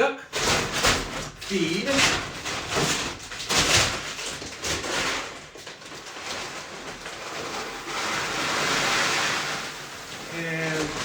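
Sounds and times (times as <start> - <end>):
grain pouring into bucket: 5.8 - 11.0.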